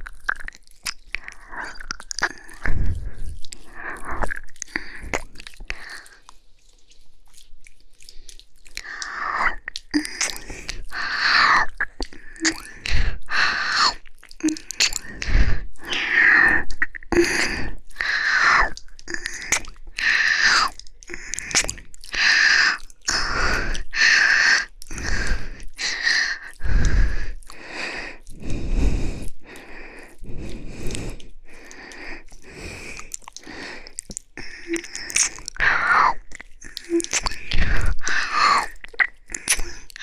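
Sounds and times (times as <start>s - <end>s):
wet mouth sounds and licking: 0.0s - 40.0s
kissing and sighs: 8.8s - 11.3s, 12.1s - 40.0s.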